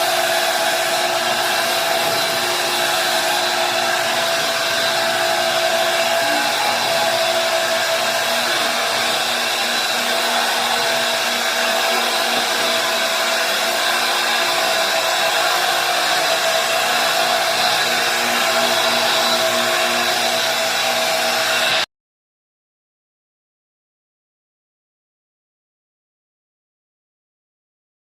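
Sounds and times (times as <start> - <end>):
carpet extractor motor whine: 0.0 - 21.8.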